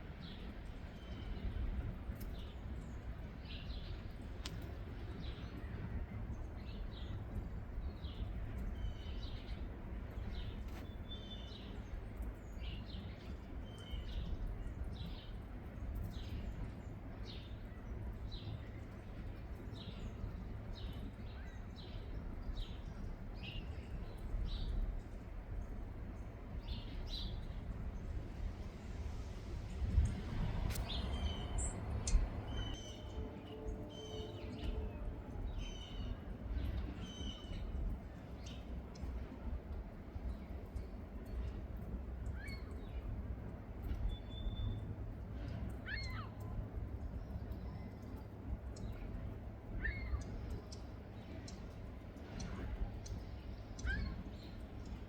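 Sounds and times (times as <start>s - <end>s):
steady low rumble: 14.2s - 37.0s
wild birds chirping: 30.5s - 37.8s, 47.3s - 55.0s.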